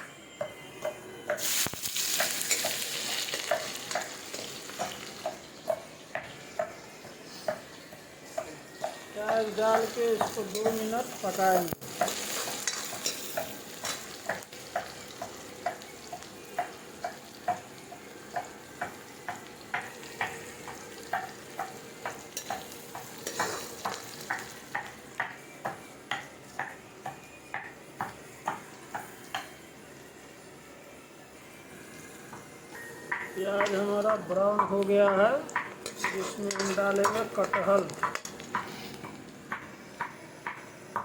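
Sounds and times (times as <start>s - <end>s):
onions sizzling in oil: 1.3s - 26.8s, 33.1s - 39.0s
spoon knocking against pan: 18.4s - 29.5s, 33.1s - 41.0s.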